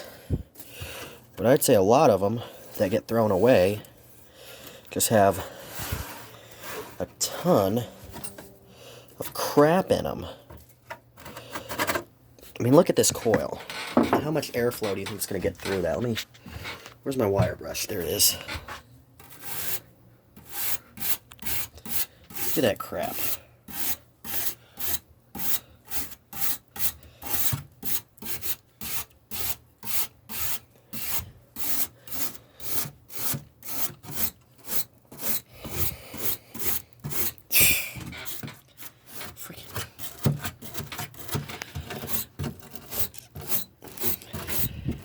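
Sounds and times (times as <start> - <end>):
wire brush scrubbing coil: 20.5 - 45.0.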